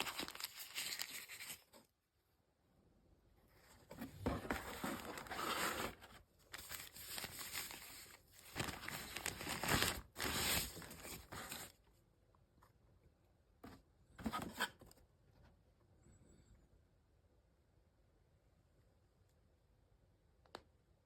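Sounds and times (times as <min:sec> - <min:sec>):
packaging rustling and crinkling: 0:00.0 - 0:01.7, 0:04.0 - 0:11.7.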